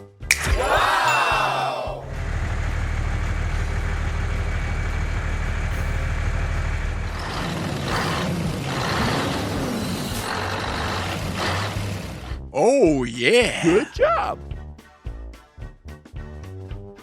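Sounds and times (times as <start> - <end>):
truck engine running: 2.0 - 12.4.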